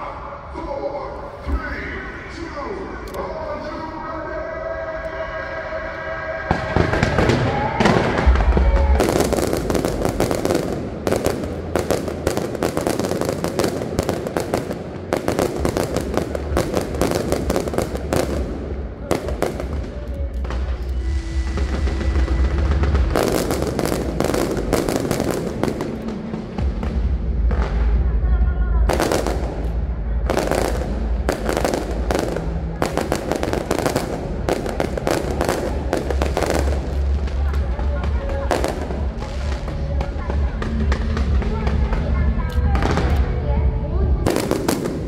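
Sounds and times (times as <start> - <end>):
music: 4.9 - 45.0
fireworks cracking and booming: 6.3 - 45.0.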